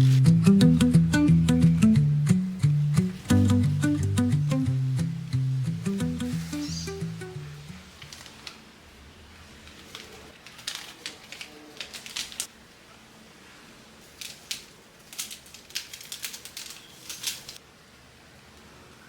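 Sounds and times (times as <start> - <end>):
quick sharp clicks and crinkles: 9.6 - 12.5, 14.0 - 17.6.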